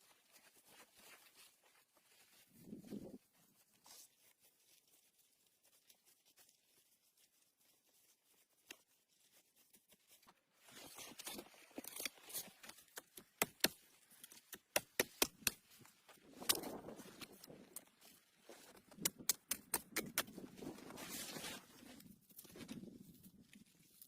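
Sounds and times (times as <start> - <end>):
rustling handling noises: 0.0 - 14.8
sharp clicks and snaps: 18.9 - 20.4.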